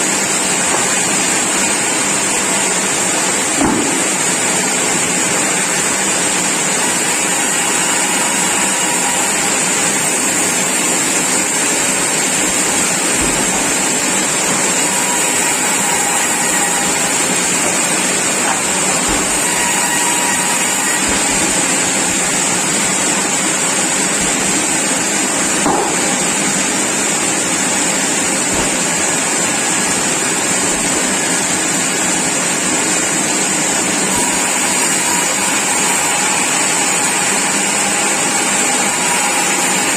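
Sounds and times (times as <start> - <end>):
sawmill machinery running: 0.0 - 39.9.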